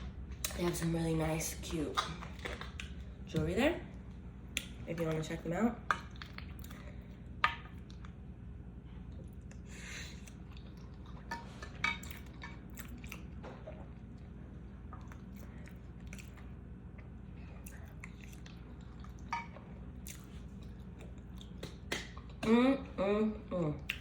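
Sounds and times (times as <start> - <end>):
low steady hum: 0.0 - 24.0
chewing food: 1.5 - 3.3, 5.9 - 8.3, 9.0 - 22.5
mouth clicks and wet smacks: 4.5 - 4.8, 20.0 - 22.6.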